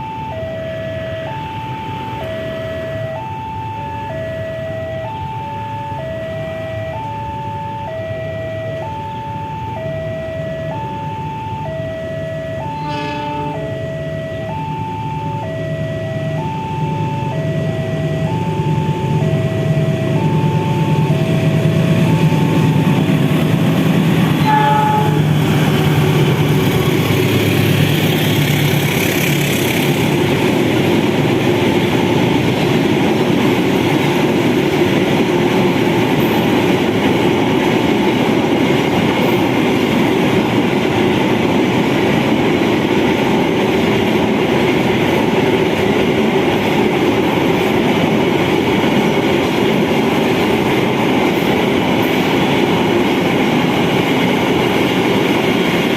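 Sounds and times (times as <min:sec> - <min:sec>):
diesel locomotive droning: 0:00.0 - 0:55.9
level crossing alarm two-note: 0:11.6 - 0:22.7
train wagons rumbling: 0:16.3 - 0:55.9.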